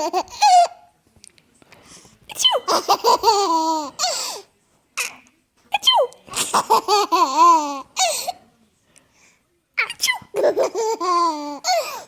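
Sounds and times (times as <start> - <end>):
baby laughing: 2.4 - 4.0, 6.4 - 8.2, 9.8 - 12.0.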